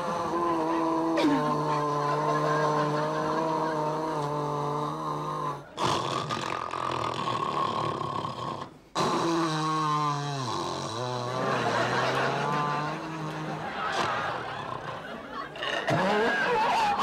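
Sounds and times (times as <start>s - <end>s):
man snoring loudly: 0.0s - 13.4s.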